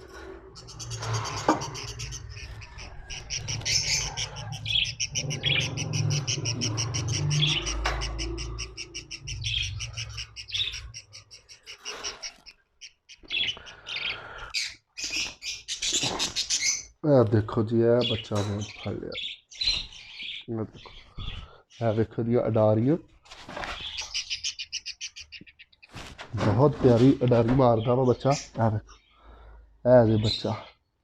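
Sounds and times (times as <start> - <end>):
parrots chirping: 0.0 - 17.0, 23.8 - 25.9
short bird calls: 0.5 - 16.9.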